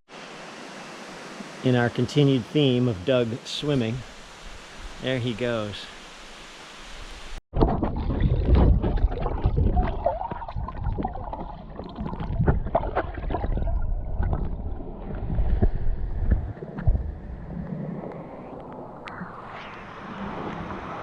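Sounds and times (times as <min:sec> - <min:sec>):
water splashing from swimming: 0:07.6 - 0:19.2.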